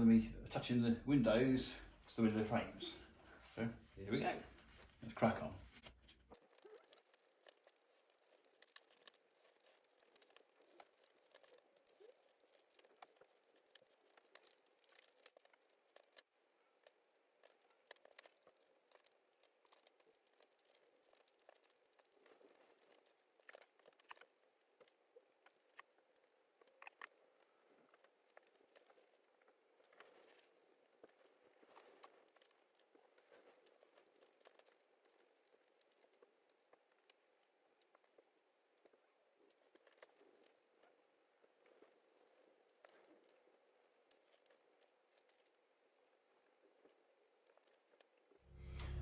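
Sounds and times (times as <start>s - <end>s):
paper clicks and rustles: 4.5s - 40.9s.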